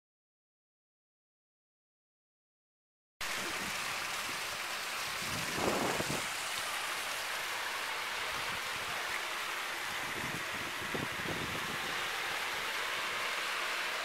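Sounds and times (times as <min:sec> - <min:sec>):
waterfall spilling into pool: 0:03.2 - 0:14.0.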